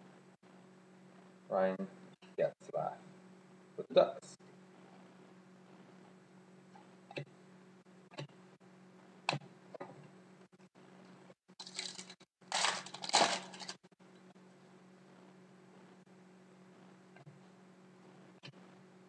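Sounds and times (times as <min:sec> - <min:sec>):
card packs crinkling: 0:11.6 - 0:13.8.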